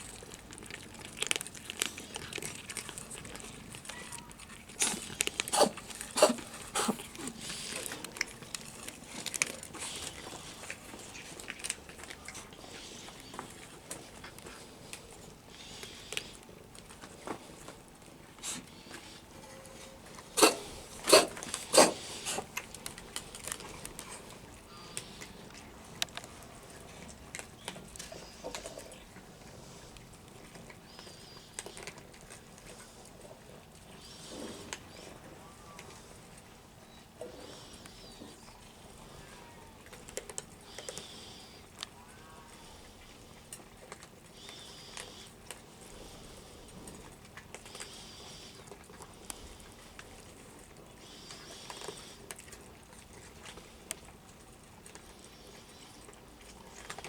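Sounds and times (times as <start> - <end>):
crinkling and crunching: 0.0 - 57.0
soft clicks and rustles: 22.4 - 39.1.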